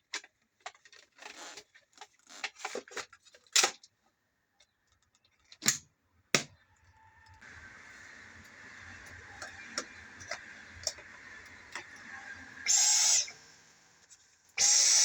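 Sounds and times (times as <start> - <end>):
faint steady hum: 7.0 - 14.9.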